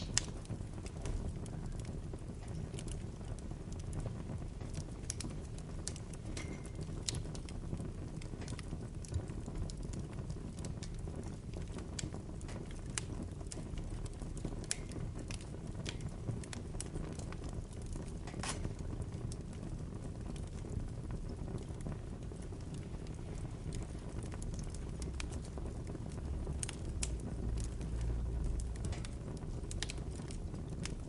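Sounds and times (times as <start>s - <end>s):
low rumble of flames: 0.0s - 31.0s
wood crackling and popping: 0.0s - 31.0s.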